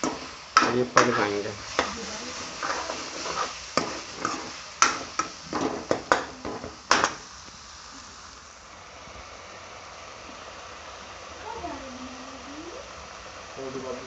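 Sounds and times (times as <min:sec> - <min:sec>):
spoon scraping a pan: 0:00.0 - 0:07.2
frying sizzle: 0:00.0 - 0:14.0.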